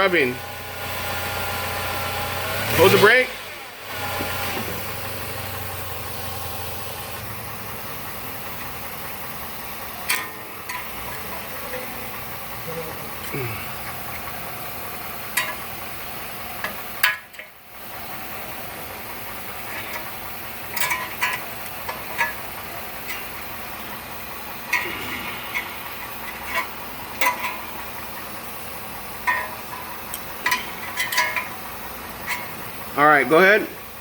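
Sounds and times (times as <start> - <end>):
van engine idling: 0.0 - 34.0
sharp metallic clicks and scrapes: 9.9 - 11.8, 15.3 - 15.7, 19.5 - 23.8, 24.6 - 28.4, 29.2 - 32.8.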